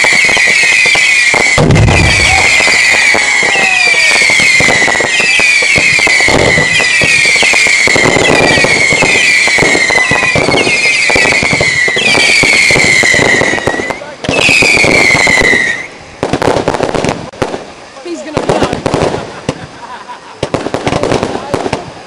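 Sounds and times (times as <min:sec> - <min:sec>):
whistling fireworks screeching: 0:00.0 - 0:17.1
crackling and popping fireworks: 0:00.0 - 0:22.0.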